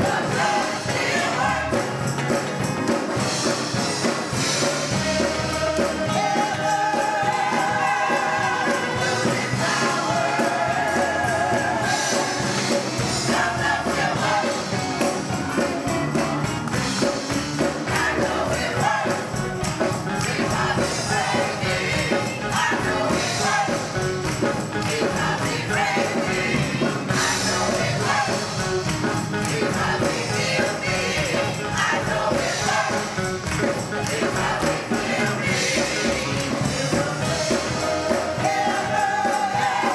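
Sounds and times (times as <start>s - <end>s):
gospel choir singing: 0.0s - 39.9s
tambourine: 0.0s - 39.9s.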